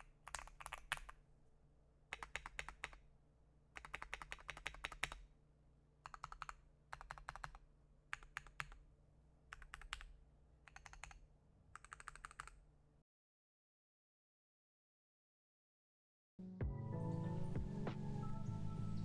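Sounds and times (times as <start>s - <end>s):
keyboard typing: 0.0s - 1.2s, 2.1s - 3.0s, 3.8s - 5.2s, 6.0s - 8.8s, 9.5s - 12.6s.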